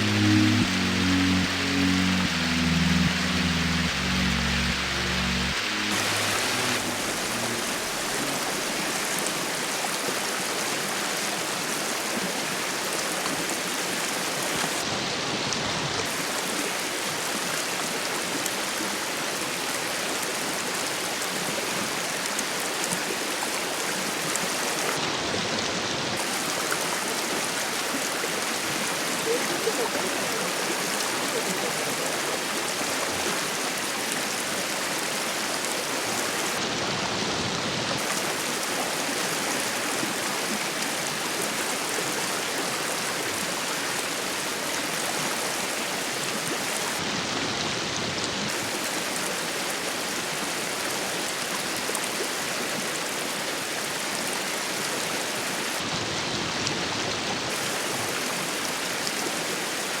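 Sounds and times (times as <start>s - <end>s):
mountain stream rushing: 0.0s - 60.0s.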